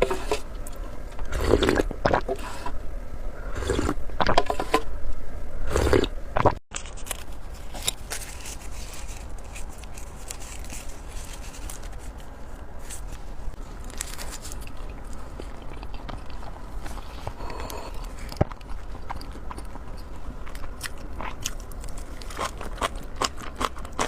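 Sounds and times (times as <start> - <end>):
chewing and biting: 13.8 - 24.0.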